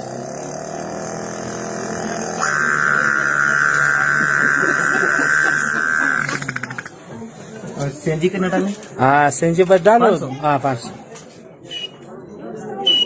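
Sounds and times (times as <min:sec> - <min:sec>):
boy imitating generator drone: 0:00.0 - 0:06.9.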